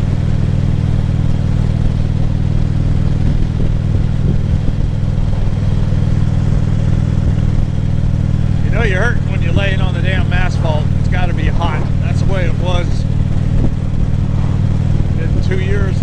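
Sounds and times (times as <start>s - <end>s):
motorcycle engine running steadily: 0.0s - 16.0s.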